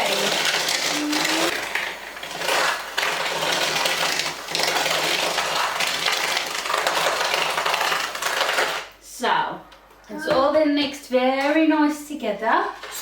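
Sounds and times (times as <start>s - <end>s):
electric hand mixer running: 0.0s - 8.7s.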